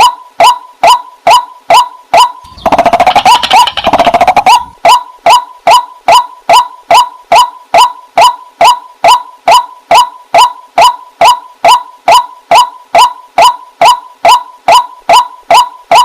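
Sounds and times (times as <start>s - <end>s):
waterhen calling: 2.5s - 6.2s.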